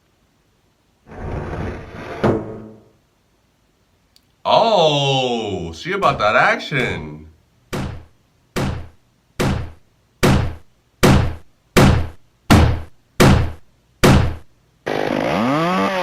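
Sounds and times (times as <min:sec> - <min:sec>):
chainsaw revving: 0:14.9 - 0:16.0.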